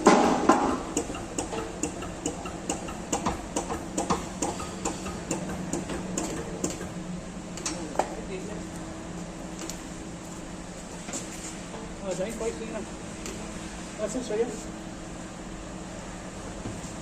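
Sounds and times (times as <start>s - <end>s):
regular ticking: 0.7s - 7.0s.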